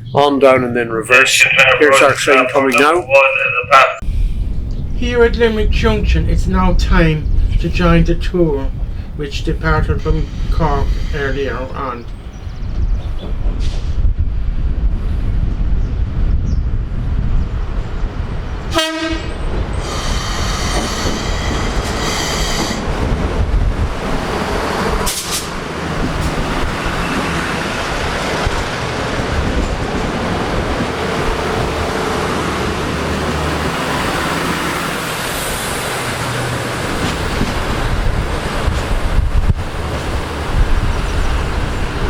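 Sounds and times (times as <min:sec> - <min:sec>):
train rumbling: 0:00.0 - 0:42.0
train horn blasts: 0:18.7 - 0:19.5.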